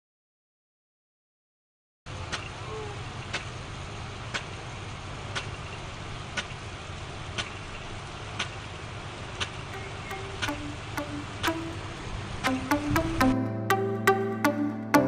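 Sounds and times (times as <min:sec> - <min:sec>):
sprinkler clicking: 0:02.3 - 0:02.5, 0:03.2 - 0:13.3.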